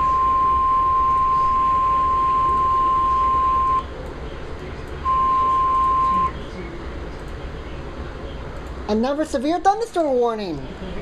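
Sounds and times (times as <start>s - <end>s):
steady alert warning tone: 0.0s - 3.9s.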